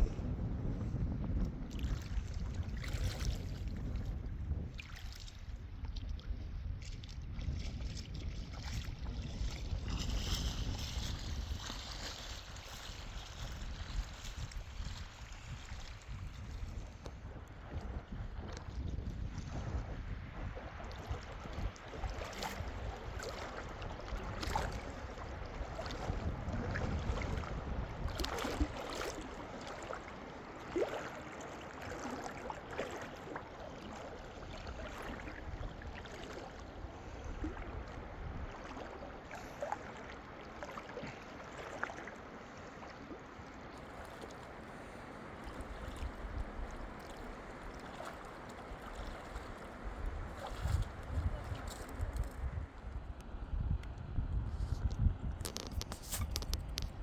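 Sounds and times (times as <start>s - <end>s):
wind rumbling on microphone: 0.0s - 39.7s, 43.7s - 57.0s
running water: 20.9s - 52.8s.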